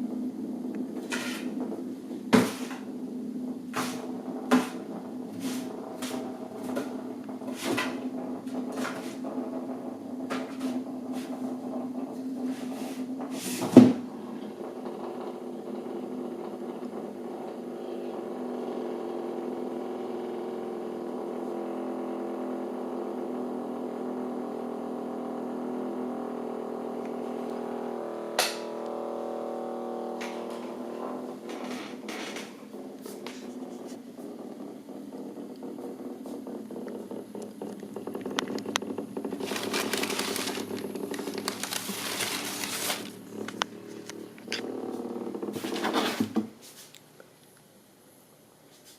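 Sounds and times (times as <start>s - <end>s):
vibrating toy buzzing in a box: 28.9s - 46.3s.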